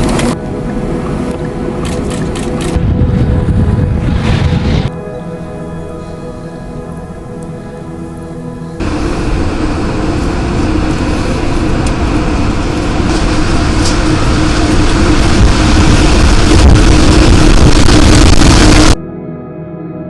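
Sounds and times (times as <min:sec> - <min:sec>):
wind buffeting microphone: 0:00.0 - 0:04.9, 0:08.8 - 0:19.0.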